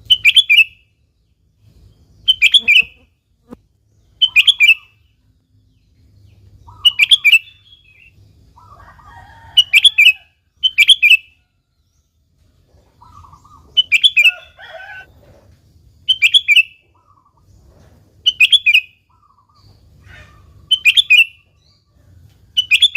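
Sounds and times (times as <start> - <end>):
bulbul singing whistled phrases: 0.0 - 1.0, 2.2 - 3.0, 4.0 - 5.2, 6.6 - 8.8, 9.6 - 11.4, 13.0 - 14.6, 16.0 - 17.4, 18.2 - 19.8, 20.7 - 21.8, 22.6 - 22.9
bird chattering notes: 2.2 - 3.6, 4.2 - 5.0, 13.0 - 14.5.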